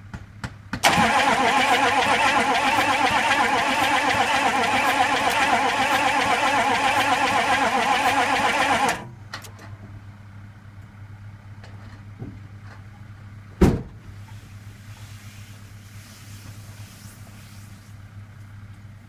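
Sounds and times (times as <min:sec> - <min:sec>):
diesel engine cranking: 0:00.8 - 0:09.8
loud thump: 0:13.6 - 0:14.0.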